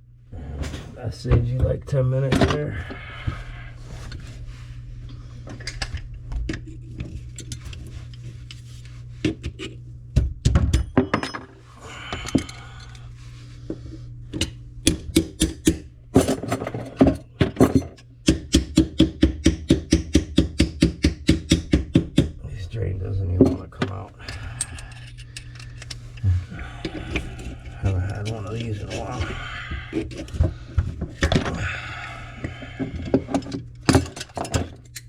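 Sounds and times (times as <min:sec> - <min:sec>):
steady low hum: 0:00.0 - 0:35.0
metal tools clinking and knocking: 0:10.7 - 0:12.6.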